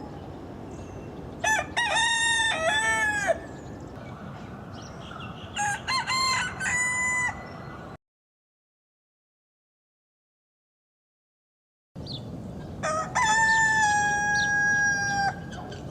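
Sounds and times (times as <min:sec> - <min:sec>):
rooster crowing: 0:01.4 - 0:03.6, 0:05.6 - 0:08.0, 0:12.8 - 0:15.6.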